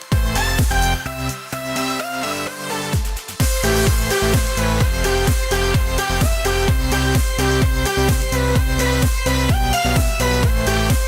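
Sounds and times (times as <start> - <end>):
electronic dance music: 0.0 - 11.0.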